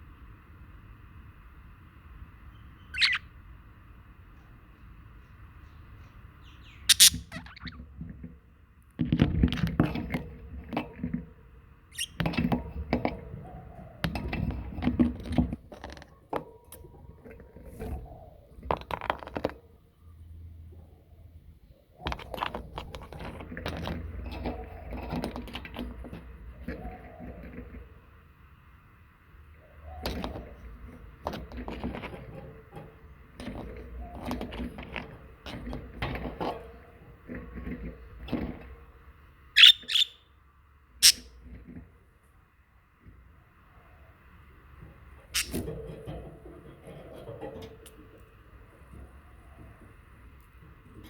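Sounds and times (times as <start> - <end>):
birds moving knocks and rustles: 2.2 - 3.4, 4.2 - 40.1, 41.0 - 51.0
budgerigars chirping and chattering: 2.8 - 3.2, 6.4 - 7.8, 12.0 - 12.2, 39.6 - 40.2, 41.0 - 41.2, 45.4 - 45.6.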